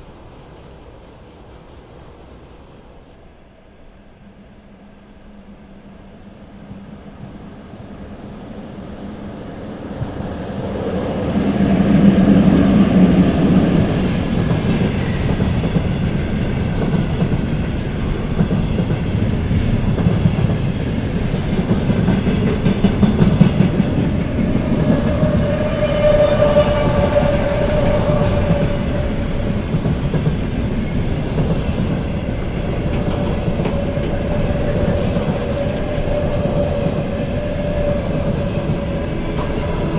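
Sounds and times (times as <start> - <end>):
train wheels rolling on rails: 8.8 - 39.9.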